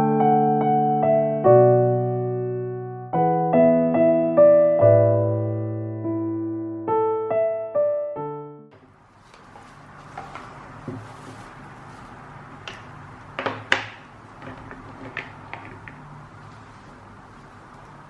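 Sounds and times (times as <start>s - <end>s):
objects clicking and knocking: 12.6s - 16.1s.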